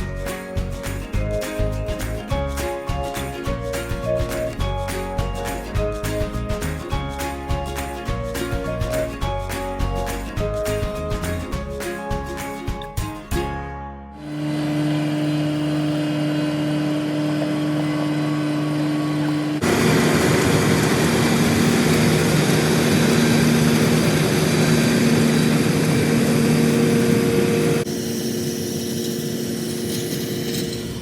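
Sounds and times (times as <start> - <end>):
combine engine running: 14.2 - 28.0
machinery noise: 14.2 - 31.0.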